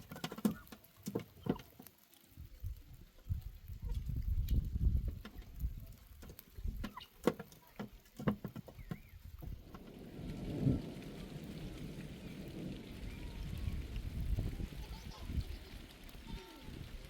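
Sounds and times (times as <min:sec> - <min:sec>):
sharp clicks and knocks: 0:00.0 - 0:01.9, 0:04.4 - 0:09.8
rain hissing: 0:00.0 - 0:17.0
low rumbling: 0:08.8 - 0:17.0.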